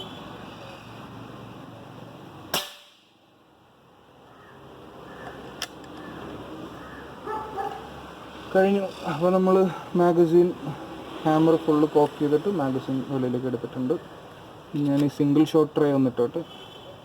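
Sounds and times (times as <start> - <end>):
air rifle shot crack: 2.5 - 3.1.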